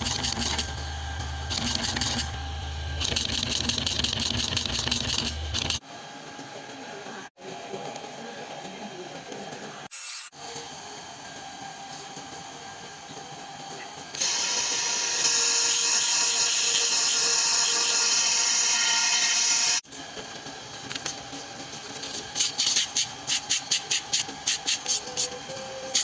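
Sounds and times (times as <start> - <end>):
staple machine clicking strokes: 1.5 - 2.4, 3.0 - 5.8.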